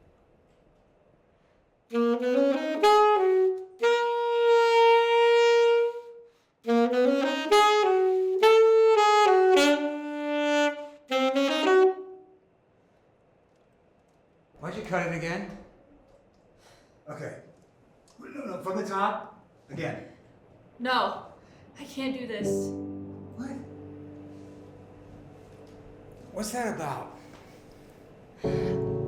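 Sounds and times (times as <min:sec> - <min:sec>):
solo saxophone: 0:01.9 - 0:12.5.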